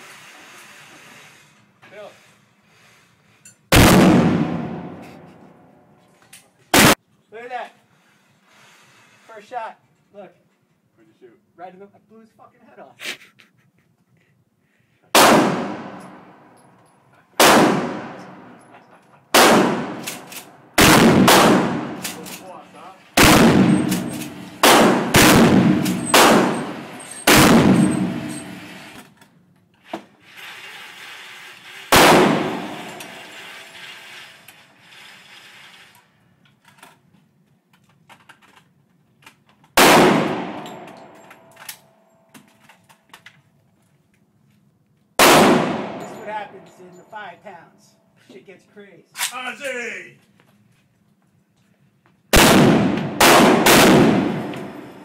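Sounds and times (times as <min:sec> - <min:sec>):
rifle gunshots ringing: 0:03.7 - 0:05.3, 0:15.2 - 0:16.2, 0:17.4 - 0:18.6, 0:19.3 - 0:22.4, 0:23.2 - 0:28.7, 0:31.9 - 0:33.2, 0:39.8 - 0:40.9, 0:45.2 - 0:46.5, 0:52.3 - 0:55.0.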